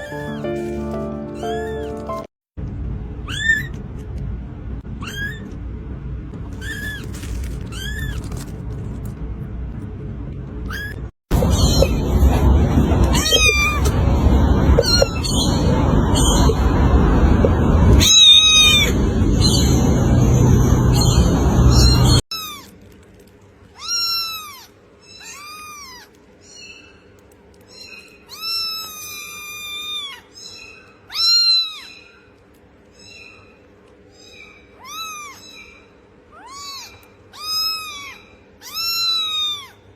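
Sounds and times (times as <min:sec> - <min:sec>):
kitten mewing: 0:10.7 - 0:15.2, 0:34.8 - 0:35.6, 0:36.3 - 0:39.8
loud noisy sound: 0:11.3 - 0:22.2.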